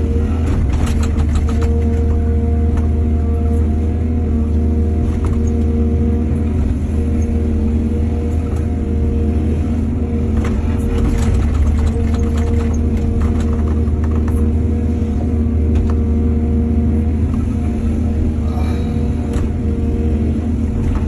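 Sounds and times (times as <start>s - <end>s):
diesel engine running: 0.0s - 21.0s
knocks and rattles: 0.5s - 2.3s, 10.4s - 14.5s.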